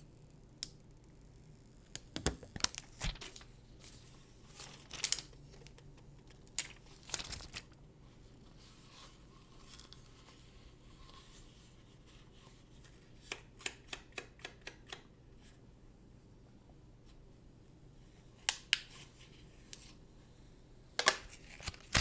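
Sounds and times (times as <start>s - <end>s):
packaging rustling: 2.2s - 7.8s, 21.0s - 22.0s.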